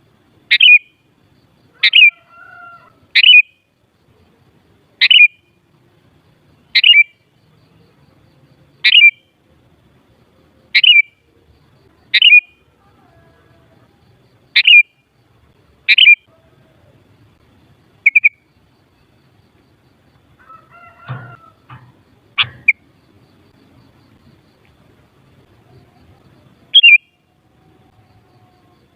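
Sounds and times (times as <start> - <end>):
bird giving sharp calls: 1.8 - 2.2, 3.2 - 3.5, 14.6 - 14.9, 15.9 - 16.2, 26.7 - 27.0.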